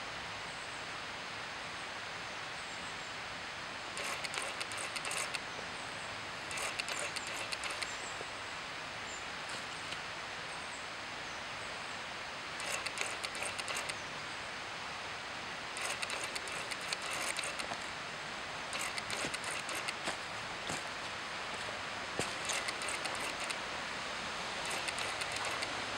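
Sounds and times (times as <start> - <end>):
rapid crackling ticks: 4.0 - 5.4, 6.5 - 8.0, 12.6 - 14.0, 15.8 - 17.9, 18.7 - 20.2, 22.2 - 23.6, 24.6 - 25.8.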